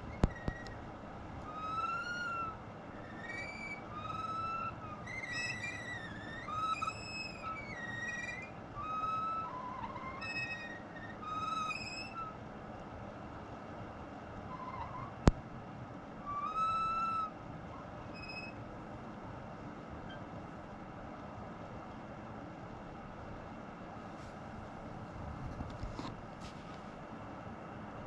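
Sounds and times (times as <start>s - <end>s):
air purifier fan hiss: 0.0s - 28.0s
wavering whistling tone: 1.4s - 12.4s.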